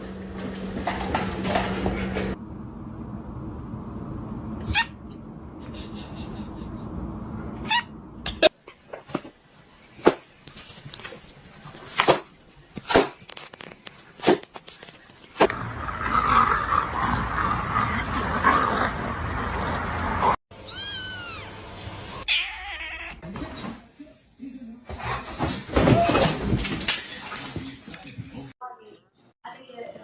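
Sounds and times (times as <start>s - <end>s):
cat meowing: 20.6s - 21.5s, 22.2s - 23.2s.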